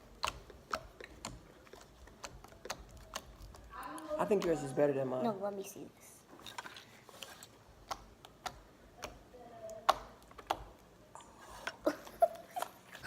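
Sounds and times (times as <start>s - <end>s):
sharp clicks and small pops: 0.0s - 3.6s, 7.8s - 10.9s.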